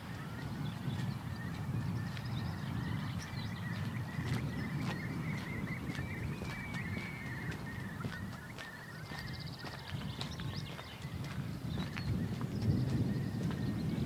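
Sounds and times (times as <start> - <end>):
small birds chirping: 0.0 - 14.0
wind rumbling on microphone: 0.0 - 14.0
footsteps on hard lane: 3.7 - 14.0.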